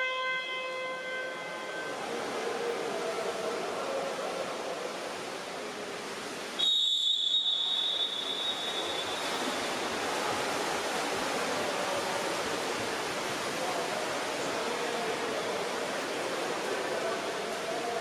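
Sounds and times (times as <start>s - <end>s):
pool hall background hiss: 0.0s - 18.0s
referee's whistle blast: 6.6s - 9.6s.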